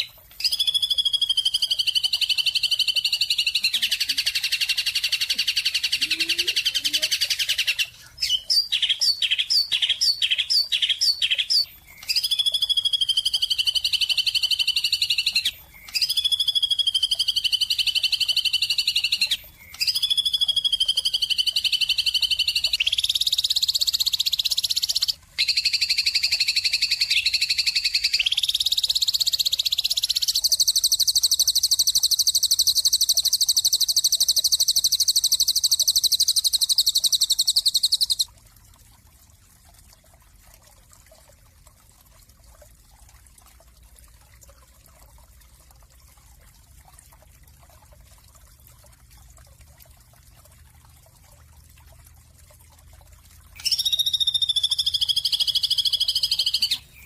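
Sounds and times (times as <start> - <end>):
high sustained bird calls: 0.0 - 38.3, 53.6 - 57.0
bird chirping: 53.6 - 57.0.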